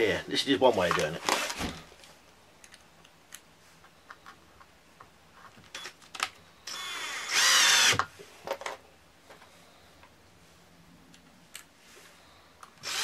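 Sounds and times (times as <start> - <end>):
power drill running: 6.7 - 8.0.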